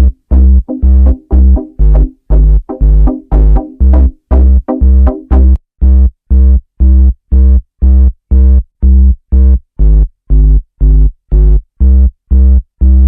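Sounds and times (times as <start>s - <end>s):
synthesizer chord stabs: 0.0s - 5.6s
heavy bass: 0.0s - 13.0s.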